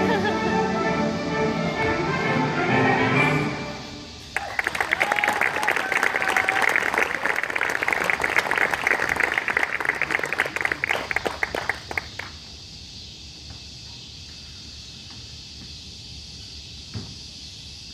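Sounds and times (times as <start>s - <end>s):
audience applause: 0.0s - 3.6s, 4.2s - 12.3s
steady high hiss: 0.0s - 6.0s.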